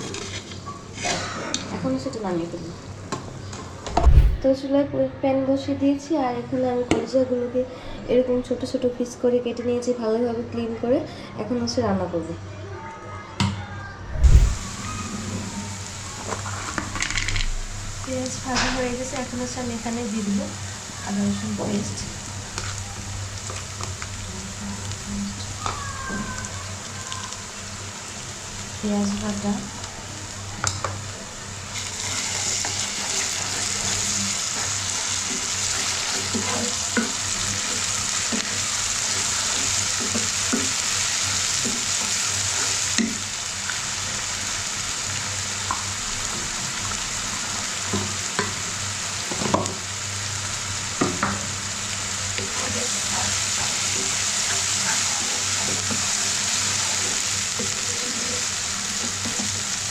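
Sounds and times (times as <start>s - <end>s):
onions sizzling in hot oil: 14.1s - 59.9s
spatula scraping a pan: 31.8s - 38.5s.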